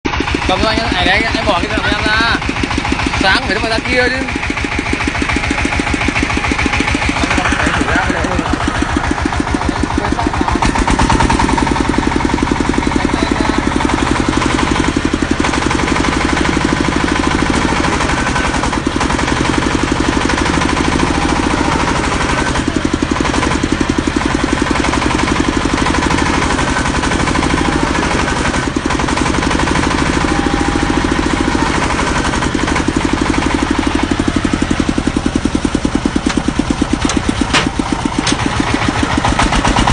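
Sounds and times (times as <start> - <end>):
drilling machine engine running: 0.0 - 39.9.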